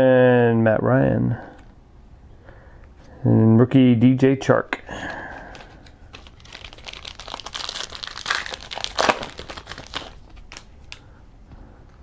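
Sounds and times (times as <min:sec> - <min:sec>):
plastic wrapper crinkling: 0:05.0 - 0:11.1.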